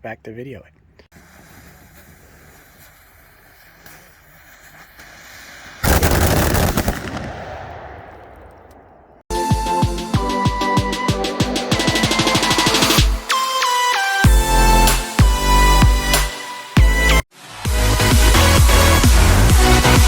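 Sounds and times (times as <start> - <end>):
faint hiss: 1.1 - 5.8
firecrackers banging rapidly: 4.7 - 8.4.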